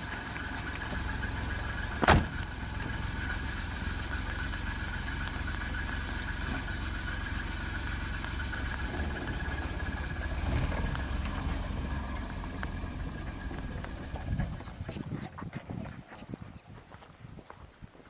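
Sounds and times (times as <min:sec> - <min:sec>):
car engine idling: 0:00.0 - 0:15.1
loud sharp knock: 0:02.0 - 0:02.3.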